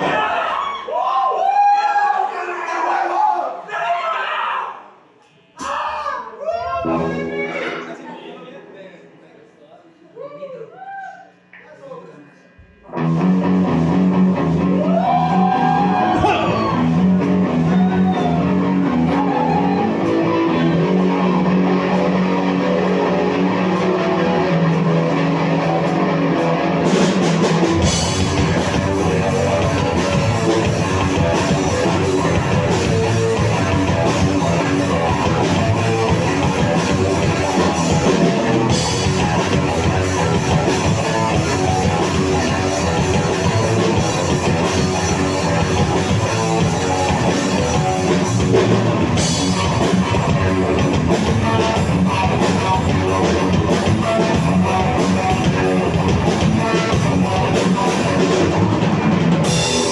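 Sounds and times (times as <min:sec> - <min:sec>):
rock band playing: 0:06.8 - 0:08.0, 0:12.9 - 0:59.9
electric guitar: 0:12.9 - 0:59.9
drums with cymbals: 0:26.4 - 0:59.9.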